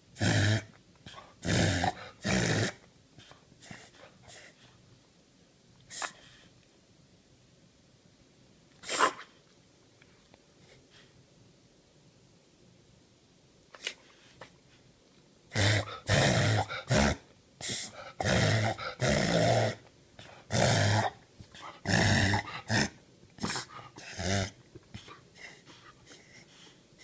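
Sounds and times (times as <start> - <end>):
dog breathing noisily: 21.5 - 22.7.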